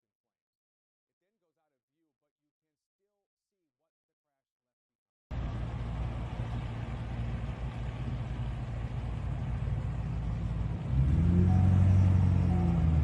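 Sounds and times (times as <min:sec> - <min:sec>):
low engine rumble: 0:05.3 - 0:13.0.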